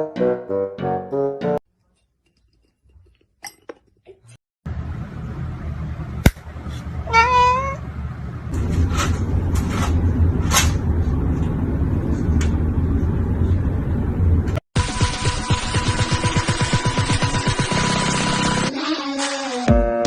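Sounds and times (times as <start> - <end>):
low rumbling background: 4.7 - 14.6
cat meowing: 7.0 - 7.8.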